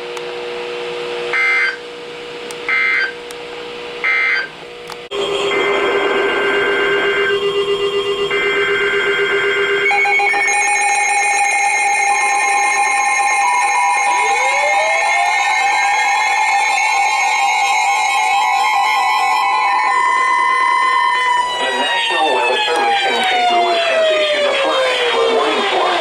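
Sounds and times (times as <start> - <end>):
two-tone attention signal: 5.1 - 24.1
rising sweep tone: 5.1 - 26.0
warbling digital header bursts: 5.2 - 19.3.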